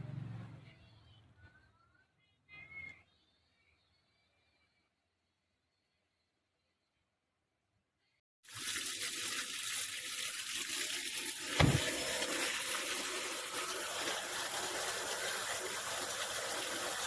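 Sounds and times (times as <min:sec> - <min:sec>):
water rushing into washing machine: 0:08.5 - 0:17.0
low thump: 0:11.6 - 0:12.0.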